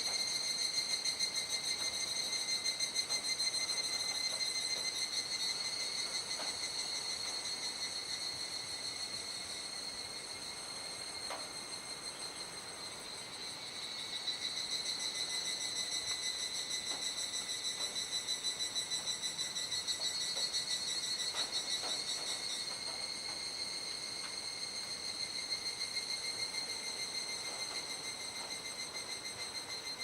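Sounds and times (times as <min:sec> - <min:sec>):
cicadas droning: 0:00.0 - 0:30.0
fast pulsing insect song: 0:00.0 - 0:30.0.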